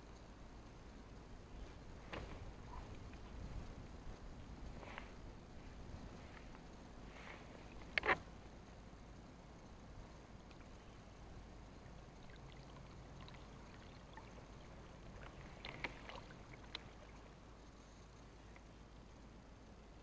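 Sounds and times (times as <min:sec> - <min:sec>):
water splashing and lapping: 0:10.4 - 0:17.7.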